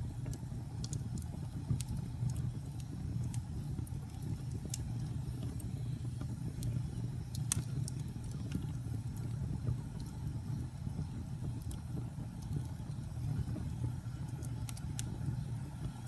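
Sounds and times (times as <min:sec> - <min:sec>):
fire crackling and popping: 0:00.0 - 0:16.0
rumble of flames: 0:00.0 - 0:16.0.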